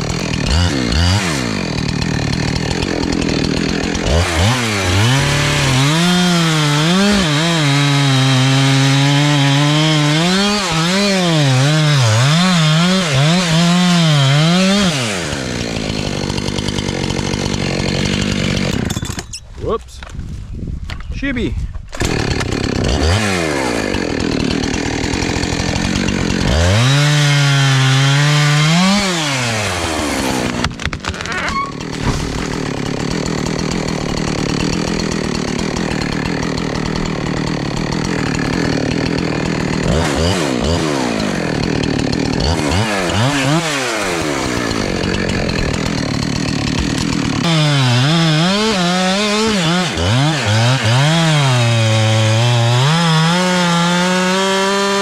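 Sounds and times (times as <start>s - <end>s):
chainsaw cutting tree trunk: 0.0s - 19.4s, 21.9s - 55.0s.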